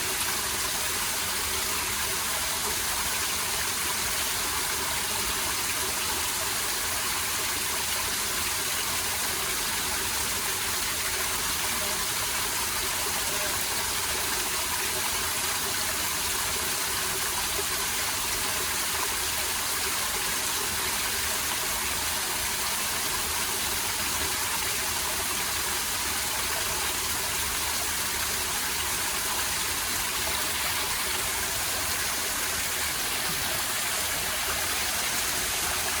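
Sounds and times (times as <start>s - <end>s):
stream water flowing: 0.0s - 36.0s.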